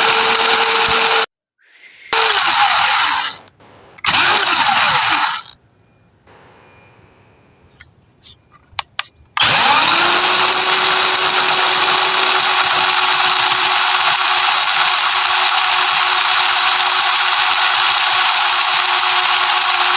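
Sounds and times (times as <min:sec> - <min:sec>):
electric motor whining: 0:00.0 - 0:01.3, 0:02.2 - 0:05.5, 0:09.4 - 0:19.9.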